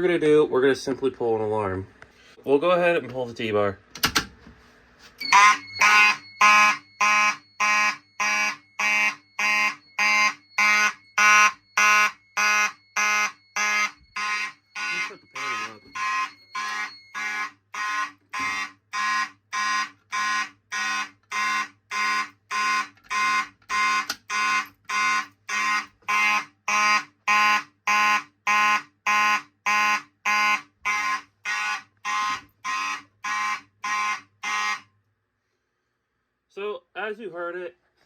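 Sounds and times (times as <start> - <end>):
fire alarm horn blasts: 5.2 - 34.9.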